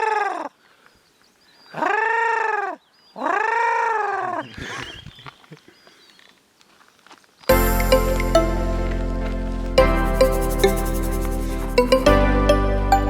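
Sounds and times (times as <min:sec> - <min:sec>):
man imitating bird calls: 0:01.6 - 0:05.8
faint small-bird chirps: 0:04.4 - 0:06.4.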